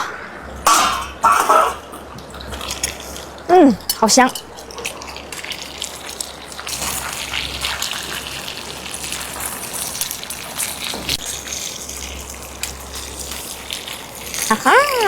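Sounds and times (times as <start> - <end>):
water running and splashing: 4.5 - 15.0.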